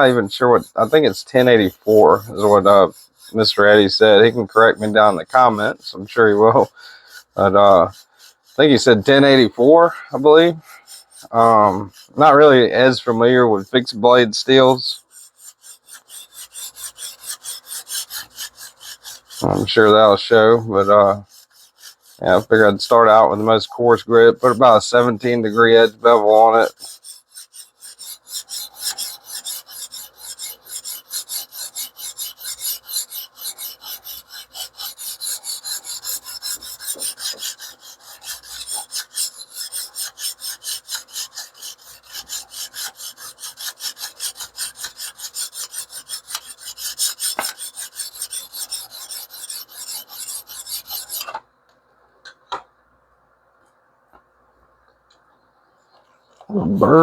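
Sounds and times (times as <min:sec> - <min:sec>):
sharpening stone scraping blade: 0:00.0 - 0:06.2, 0:07.1 - 0:08.6, 0:10.6 - 0:12.6, 0:14.9 - 0:19.6, 0:21.3 - 0:51.4.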